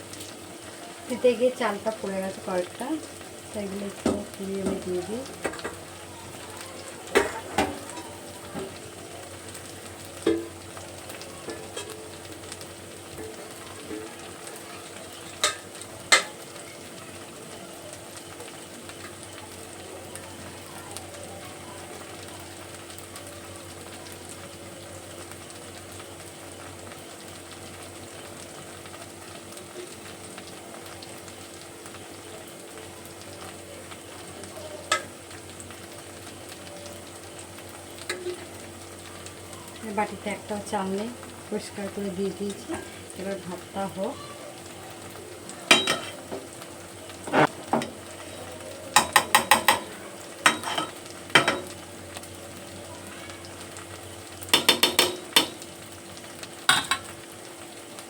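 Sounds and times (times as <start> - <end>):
food sizzling in a pan: 0.0 - 58.0
utensil knocking against pan: 49.0 - 51.7, 54.5 - 55.6.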